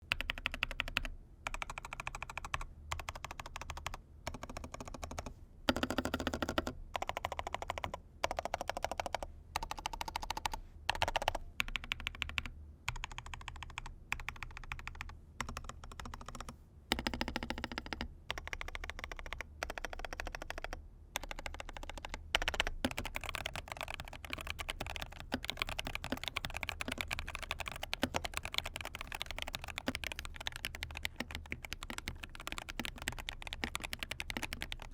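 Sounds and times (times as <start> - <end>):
mechanical keyboard typing: 0.1 - 34.9.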